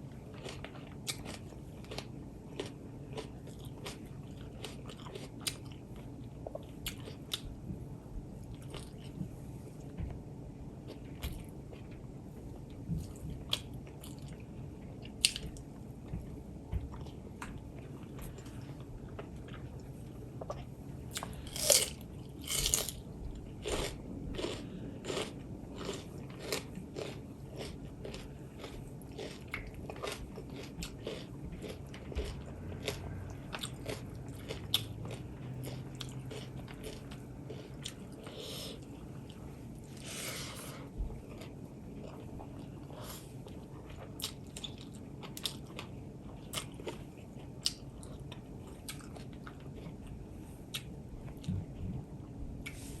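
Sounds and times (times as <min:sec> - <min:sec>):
person chewing with smacking sounds: 0:00.1 - 0:07.6, 0:08.4 - 0:10.2, 0:10.8 - 0:53.0
crunchy bites: 0:21.2 - 0:23.0.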